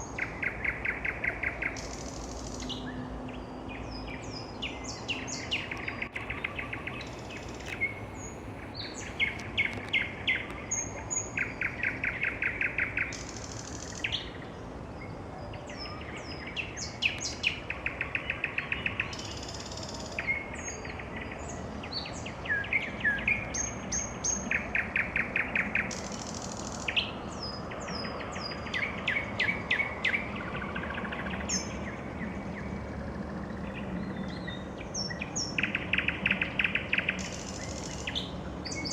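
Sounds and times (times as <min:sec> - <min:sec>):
nightingale singing: 0:00.0 - 0:32.8, 0:33.5 - 0:38.9.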